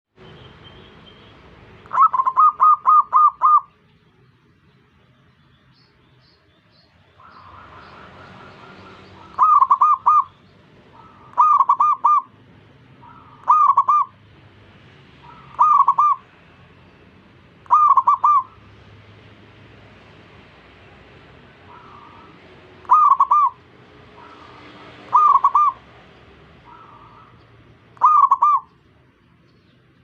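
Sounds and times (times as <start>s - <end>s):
dove cooing rolling notes: 1.9s - 3.7s, 7.2s - 10.3s, 10.9s - 12.4s, 13.0s - 14.2s, 15.2s - 16.3s, 17.6s - 18.7s, 21.5s - 26.0s, 26.6s - 27.4s, 28.0s - 28.7s
faint dove cooing: 1.9s - 3.7s, 9.2s - 10.3s, 11.0s - 12.3s, 13.0s - 14.1s, 15.2s - 16.2s, 17.7s - 18.6s, 21.6s - 23.6s, 24.2s - 25.8s, 26.6s - 27.4s, 28.0s - 28.7s.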